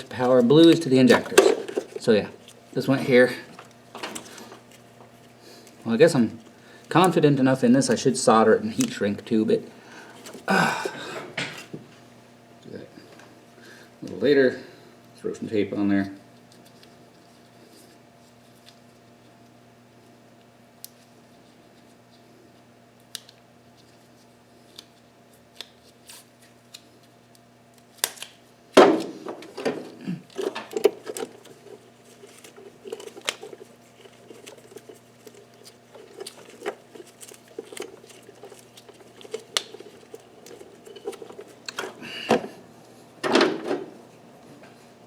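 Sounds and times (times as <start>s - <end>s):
steady electrical hum: 0.0s - 45.0s
rustling scraping and knocking: 0.1s - 2.6s, 28.8s - 42.6s.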